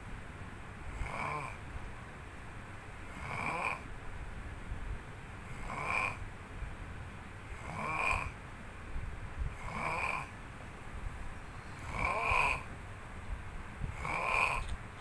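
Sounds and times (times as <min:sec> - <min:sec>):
person snoring: 0:11.8 - 0:12.7, 0:14.0 - 0:14.7.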